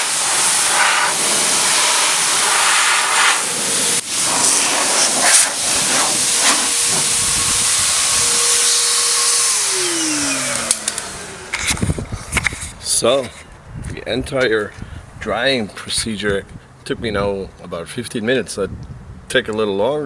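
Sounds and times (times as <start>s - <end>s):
motor whine winding down: 0.0s - 13.1s
blow dryer rushing air: 0.0s - 13.4s.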